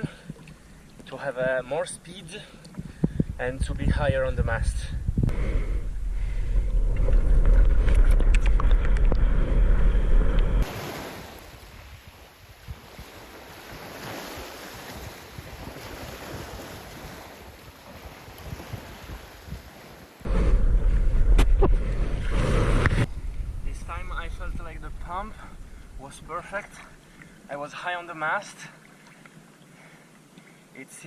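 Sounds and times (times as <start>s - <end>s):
wind buffeting microphone: 2.8s - 10.8s, 11.4s - 27.1s
rush of water: 10.3s - 20.3s.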